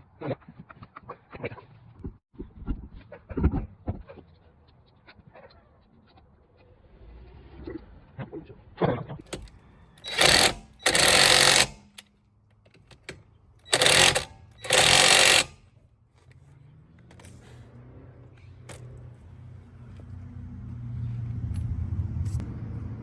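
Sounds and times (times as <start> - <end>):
impact wrench rattling: 9.3 - 15.8.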